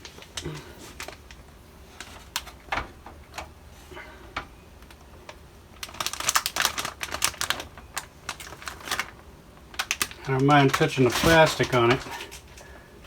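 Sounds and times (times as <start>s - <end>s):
plastic packaging crinkling and clicking: 0.0s - 3.5s, 4.3s - 12.8s.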